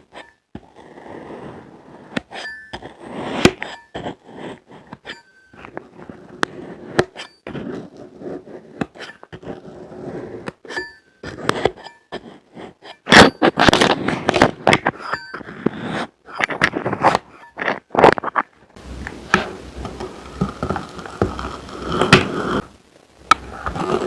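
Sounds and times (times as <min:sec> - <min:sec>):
sand crunching and crumbling: 0:18.3 - 0:24.0.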